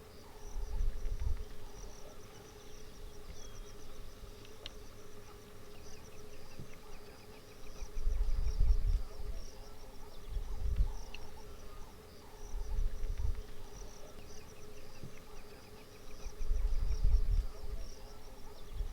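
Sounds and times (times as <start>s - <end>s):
insects chirping: 0.0s - 18.9s.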